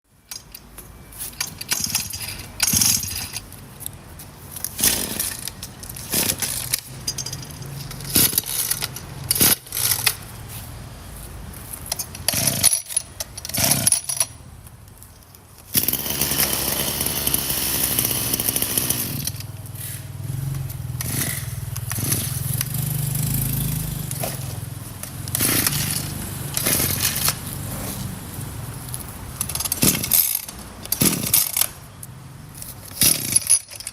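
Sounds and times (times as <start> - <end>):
metal tool clattering: 4.7 - 10.2
small petrol engine running: 15.8 - 28.2.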